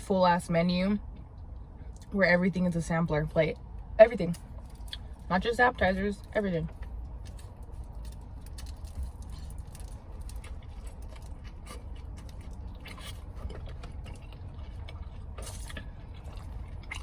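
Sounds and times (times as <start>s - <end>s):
chewing and mouth clicks: 4.4s - 5.3s, 6.7s - 17.0s.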